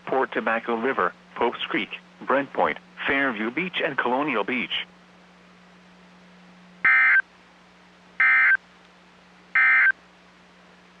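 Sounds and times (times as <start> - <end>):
faint steady hum: 0.0 - 11.0
buzzy two-tone digital data bursts: 6.9 - 7.2, 8.2 - 8.6, 9.6 - 9.9.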